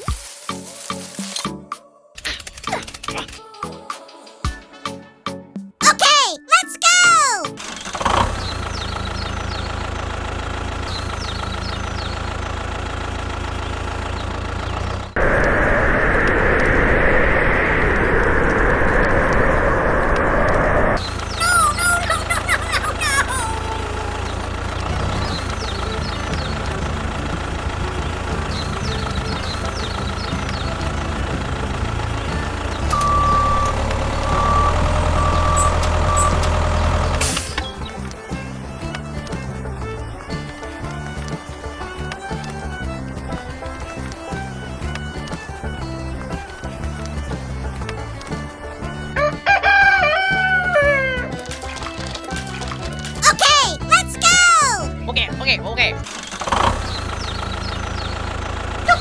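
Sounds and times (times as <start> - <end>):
engine idling: 8.0 - 15.3, 23.7 - 48.3, 56.4 - 59.0.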